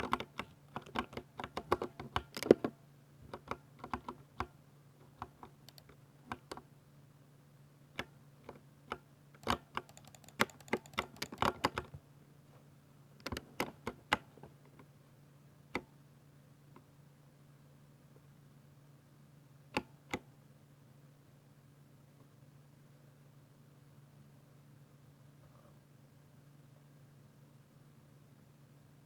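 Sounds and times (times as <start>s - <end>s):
mechanical keyboard typing: 0.0s - 2.7s, 3.3s - 4.5s, 5.1s - 6.6s, 9.4s - 11.9s.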